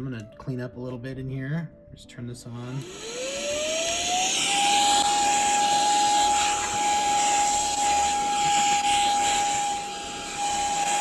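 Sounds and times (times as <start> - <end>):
hand vacuum cleaner whining: 2.8 - 11.0.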